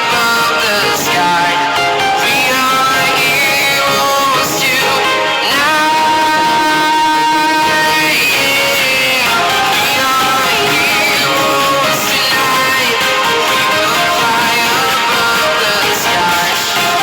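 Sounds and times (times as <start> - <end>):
pop song with singer and guitar: 0.0 - 17.0.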